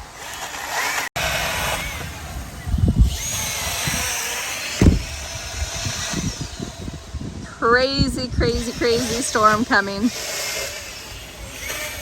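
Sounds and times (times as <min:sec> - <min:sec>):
chainsaw cutting wood: 0:00.0 - 0:07.4, 0:08.4 - 0:12.0
heavy thumps: 0:04.7 - 0:05.2.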